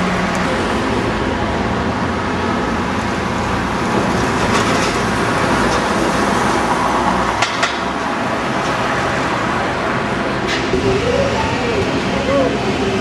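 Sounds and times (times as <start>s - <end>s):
road traffic: 0.0s - 13.0s
vehicle engine rumbling: 10.2s - 13.0s.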